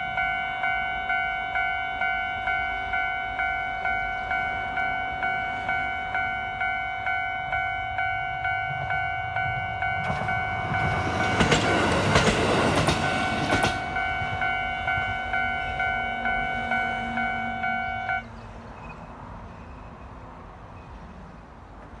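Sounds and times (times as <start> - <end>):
level crossing warning bell: 0.0 - 18.3
diesel railcar passing: 0.0 - 22.0
wheel clacks over rail joints: 10.0 - 15.0.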